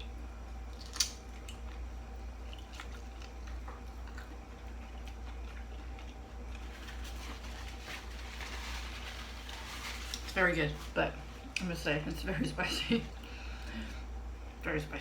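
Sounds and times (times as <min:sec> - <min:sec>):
low hum: 0:00.0 - 0:15.0
person chewing: 0:00.7 - 0:07.3.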